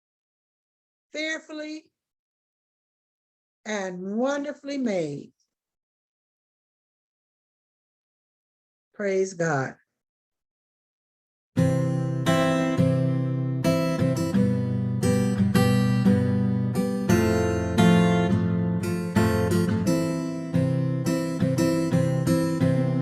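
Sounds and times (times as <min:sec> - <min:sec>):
strummed acoustic guitar: 0:11.6 - 0:23.0.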